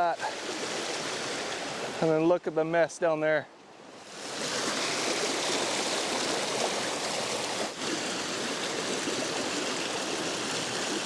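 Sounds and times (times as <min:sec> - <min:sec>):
flooded creek rushing: 0:00.0 - 0:11.0.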